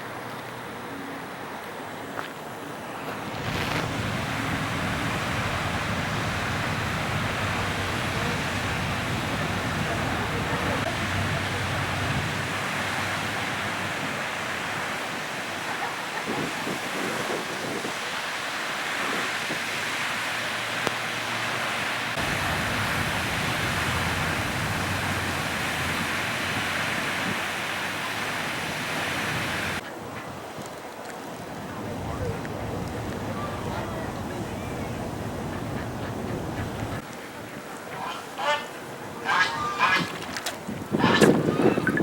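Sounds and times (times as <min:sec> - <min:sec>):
wind on microphone: 0:03.2 - 0:30.7, 0:39.4 - 0:42.0.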